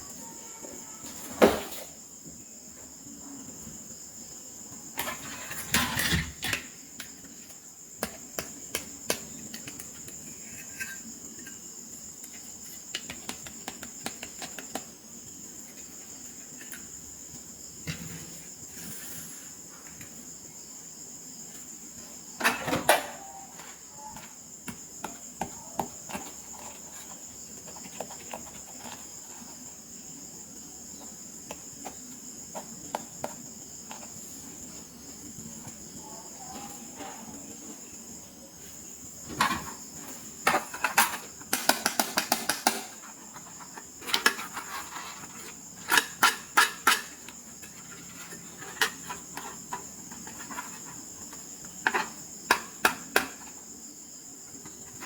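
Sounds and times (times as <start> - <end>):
plastic pieces clicking and tapping: 40.5 - 43.0.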